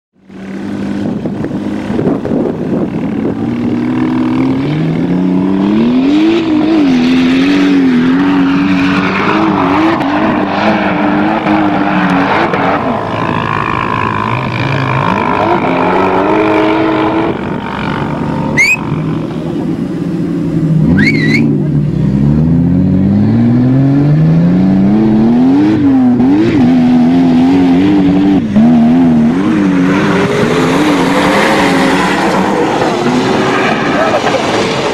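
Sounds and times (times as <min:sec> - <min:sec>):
engine revving through gears: 0:03.6 - 0:18.8, 0:20.8 - 0:34.9
short high chirps: 0:18.6 - 0:18.9, 0:20.9 - 0:21.6.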